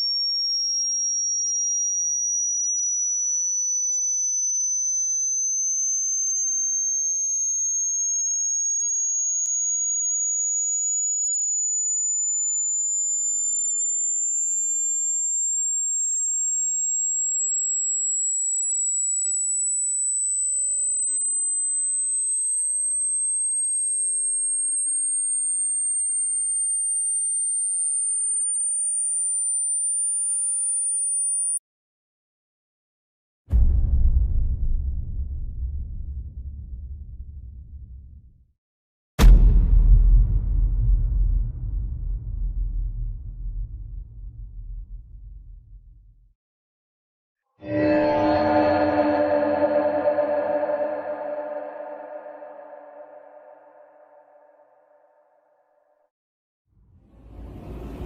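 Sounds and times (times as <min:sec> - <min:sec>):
rising sine tone sweep: 0:15.8 - 0:31.6, 0:47.6 - 0:54.4.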